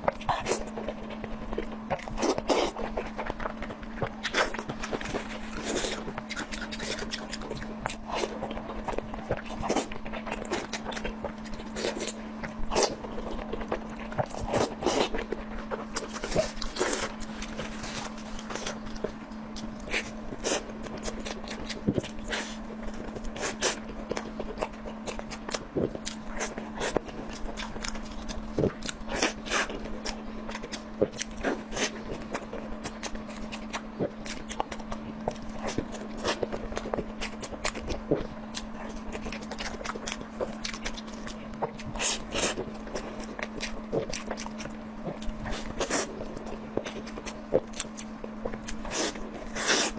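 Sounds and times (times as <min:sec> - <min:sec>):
steady low hum: 0:00.0 - 0:49.9
wet chewing: 0:00.0 - 0:49.9.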